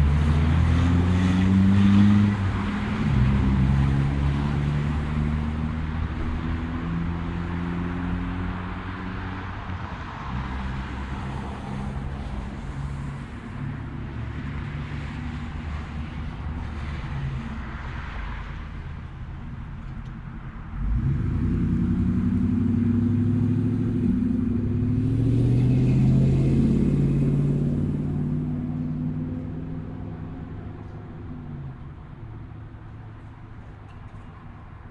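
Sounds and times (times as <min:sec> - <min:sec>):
tyre noise on road: 0:00.0 - 0:34.9
vehicle engines humming: 0:00.0 - 0:34.9.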